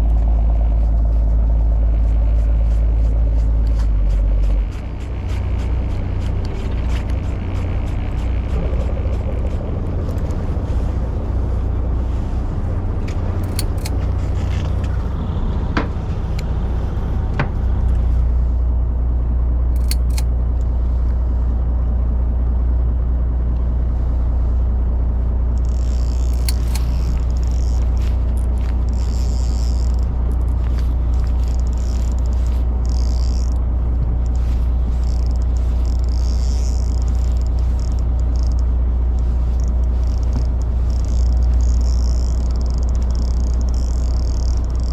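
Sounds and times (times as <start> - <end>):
boat engine low rumble: 0.0 - 44.9
sharp ticks: 13.4 - 14.2, 19.8 - 20.4, 25.6 - 44.9.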